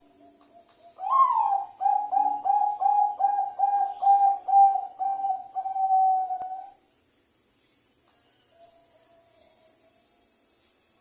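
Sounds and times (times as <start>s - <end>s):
dove cooing: 0.1s - 6.8s.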